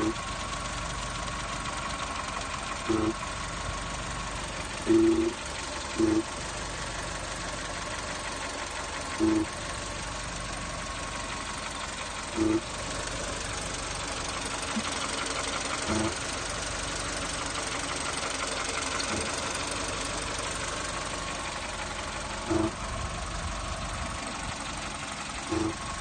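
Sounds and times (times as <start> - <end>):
car engine running: 0.0 - 26.0
steady whine: 4.8 - 5.4, 6.0 - 6.8, 19.0 - 26.0
short buzzing hum: 4.9 - 5.4, 25.5 - 25.8.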